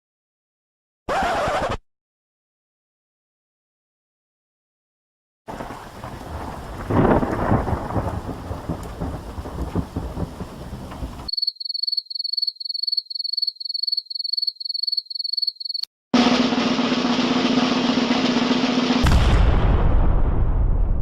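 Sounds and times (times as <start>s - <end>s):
rain hiss: 5.5s - 11.3s
thunder rumble: 5.5s - 11.3s, 17.4s - 21.0s.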